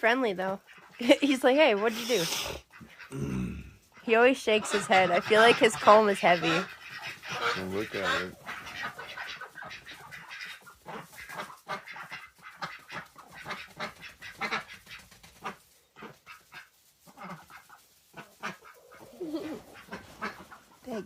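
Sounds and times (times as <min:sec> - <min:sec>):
ducks quacking: 0:00.4 - 0:03.1, 0:04.0 - 0:21.0.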